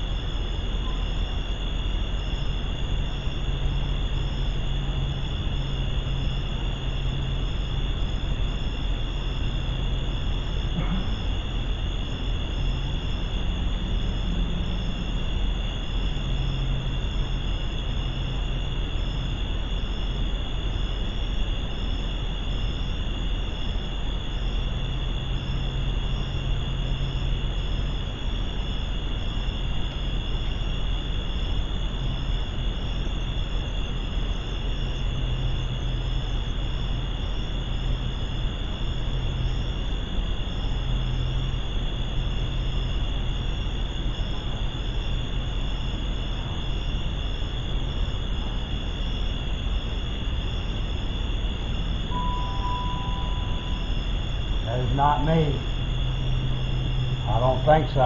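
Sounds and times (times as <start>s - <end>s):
constant hiss and low hum: 0.0s - 58.0s
continuous insect trill: 0.0s - 58.0s
crickets chirping: 0.0s - 58.0s.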